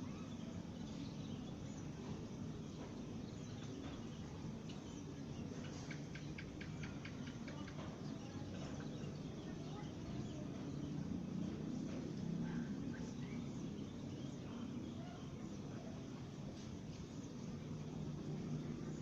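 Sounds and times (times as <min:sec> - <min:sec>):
sparrows chirping: 0:00.0 - 0:19.0
steady low rumble: 0:07.7 - 0:19.0.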